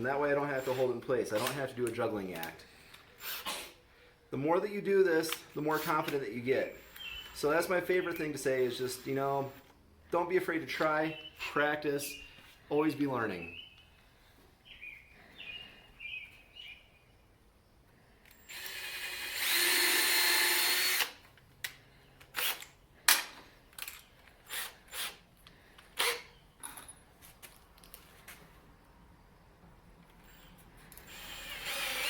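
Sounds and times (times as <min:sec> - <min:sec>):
power drill boring into wood: 0:00.6 - 0:01.6, 0:18.3 - 0:21.2, 0:22.3 - 0:22.7, 0:24.5 - 0:25.2, 0:26.0 - 0:26.3, 0:31.0 - 0:32.0.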